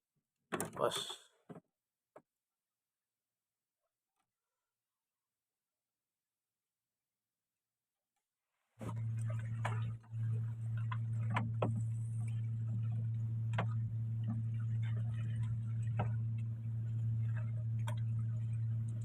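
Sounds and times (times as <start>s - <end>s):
motor humming: 8.8s - 19.0s.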